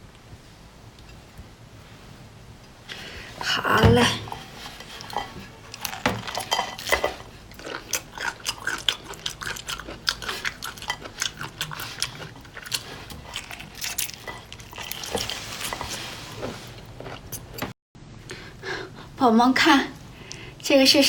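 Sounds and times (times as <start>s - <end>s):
utensils clinking on dishes: 4.7s - 8.3s
biting and chewing: 4.9s - 16.1s.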